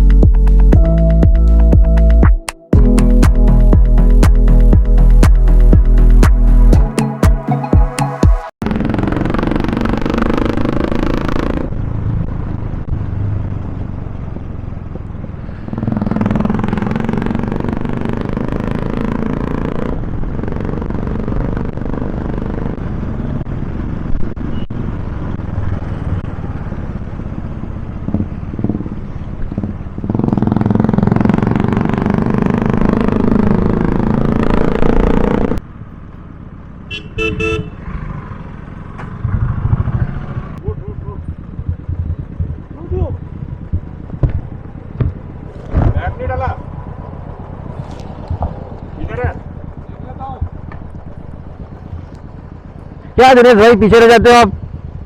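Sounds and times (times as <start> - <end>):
motorcycle engines running: 2.8 - 55.0
horn tooting: 36.9 - 38.1.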